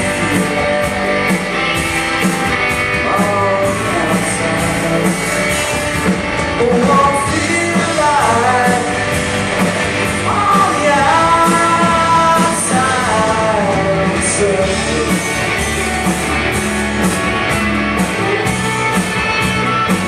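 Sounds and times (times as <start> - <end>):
person singing: 0.0 - 1.5, 2.9 - 5.9, 6.5 - 16.0
rock band playing: 0.0 - 20.0.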